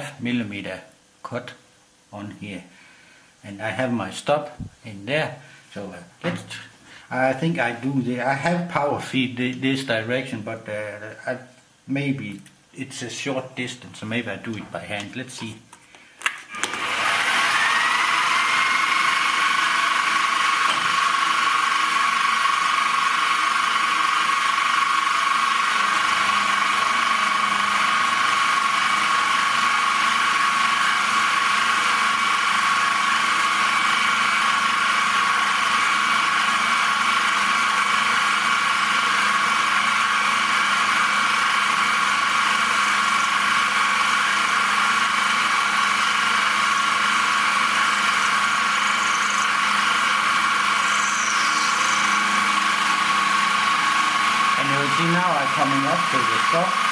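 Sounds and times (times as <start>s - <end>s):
milling machine whining: 16.5s - 56.9s.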